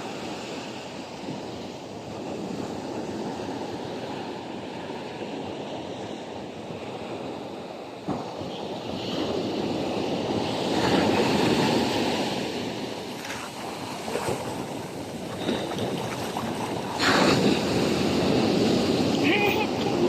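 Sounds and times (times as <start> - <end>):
sea waves breaking on shore: 0.0 - 20.0.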